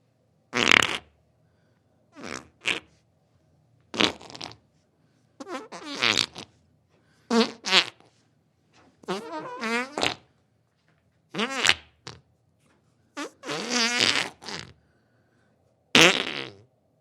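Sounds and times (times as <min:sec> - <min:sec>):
person farting: 0:00.6 - 0:01.1, 0:02.2 - 0:02.9, 0:03.9 - 0:04.6, 0:05.4 - 0:06.5, 0:07.3 - 0:08.1, 0:09.0 - 0:10.3, 0:11.4 - 0:12.2, 0:13.2 - 0:14.8, 0:16.0 - 0:16.7.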